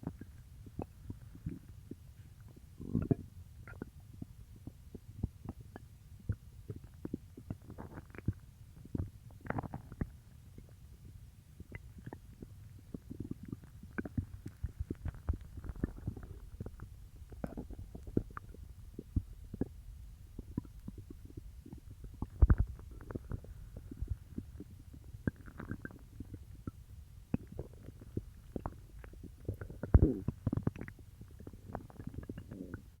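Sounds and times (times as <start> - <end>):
stomach growling and gurgling: 0.0 - 33.0.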